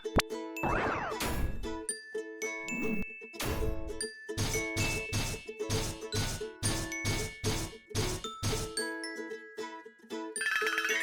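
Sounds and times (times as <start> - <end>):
cartoon dings and chimes: 0.6 - 1.8, 2.4 - 5.4, 10.4 - 11.0
railroad crossing bell ringing: 10.4 - 11.0.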